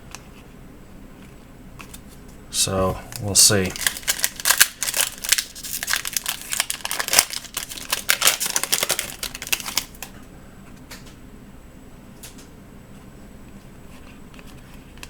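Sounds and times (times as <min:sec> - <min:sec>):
card pack wrapper tearing and crinkling: 0:02.8 - 0:10.1.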